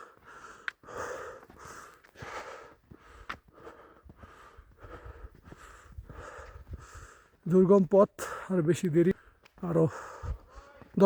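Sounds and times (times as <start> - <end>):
person breathing hard: 0.0 - 7.4, 9.2 - 11.0
wind rumble on microphone: 4.7 - 7.1.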